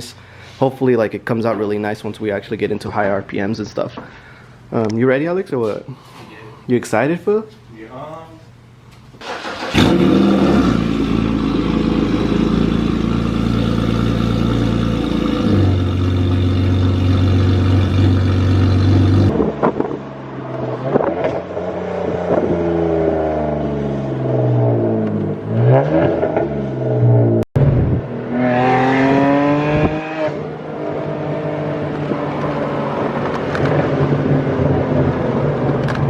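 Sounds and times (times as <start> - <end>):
car engine revving: 9.2 - 36.0
loud straight pipe exhaust: 9.7 - 19.8.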